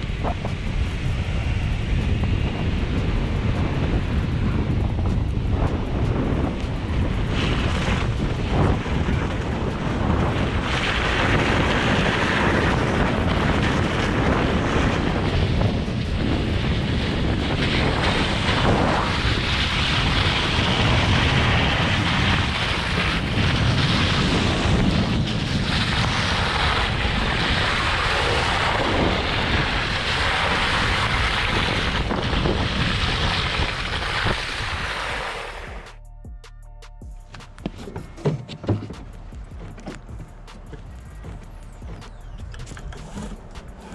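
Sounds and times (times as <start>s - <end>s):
dense rushing noise: 0.0s - 36.4s, 37.0s - 43.9s
wind buffeting microphone: 0.0s - 36.4s, 37.0s - 43.9s.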